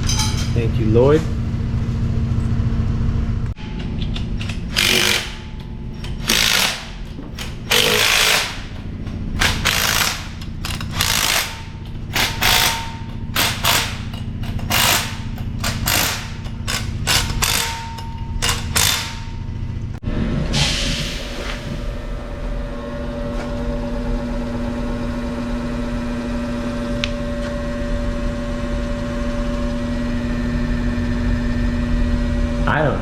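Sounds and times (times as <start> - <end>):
steady machine hum: 0.0 - 33.0
power tool bursts: 4.7 - 5.5, 6.2 - 7.0, 7.6 - 8.8, 9.4 - 14.1.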